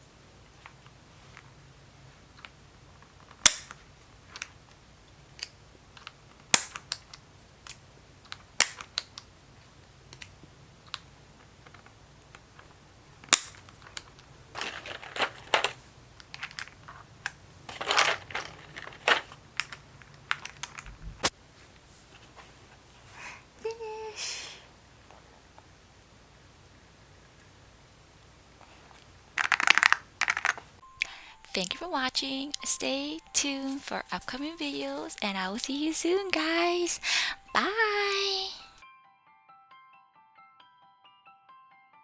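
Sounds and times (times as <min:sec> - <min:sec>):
mechanical keyboard clicks: 0:29.4 - 0:35.2.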